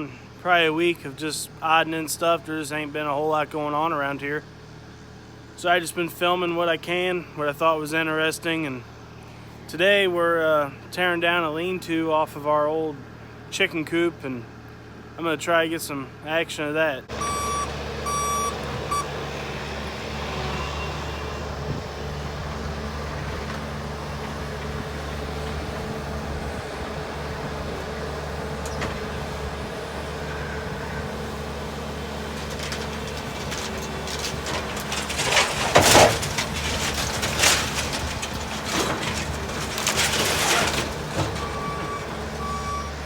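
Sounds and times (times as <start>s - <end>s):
skid loader engine running: 17.0s - 43.0s
reversing beeper: 17.2s - 19.1s, 41.4s - 43.0s
structure crashing down: 22.5s - 43.0s.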